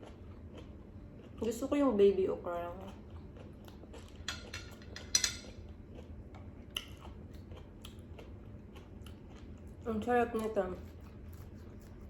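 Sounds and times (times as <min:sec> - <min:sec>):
tableware clicking and clinking: 0:04.2 - 0:05.5.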